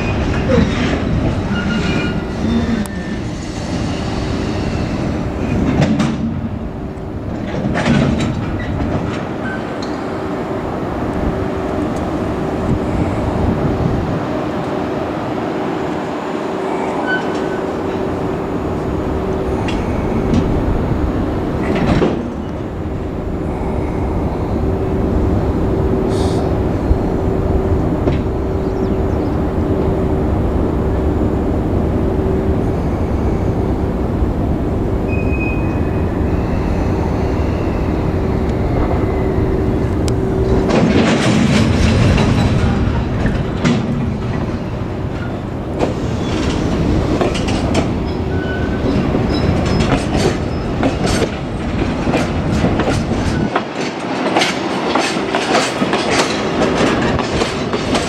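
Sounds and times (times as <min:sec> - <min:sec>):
train hum: 0:00.0 - 0:58.0
train wheels rumbling on rail: 0:00.0 - 0:58.0
wheels clacking over rail joints: 0:03.8 - 0:12.9, 0:17.0 - 0:23.4, 0:38.4 - 0:58.0.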